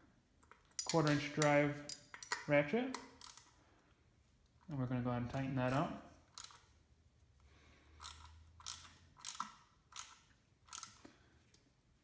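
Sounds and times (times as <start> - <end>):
ratchet clicking: 6.3 - 6.6, 8.0 - 11.0.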